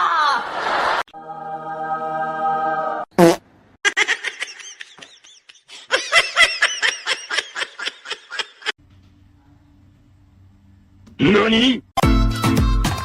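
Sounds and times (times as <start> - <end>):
high-pitched laughter: 3.8 - 8.8.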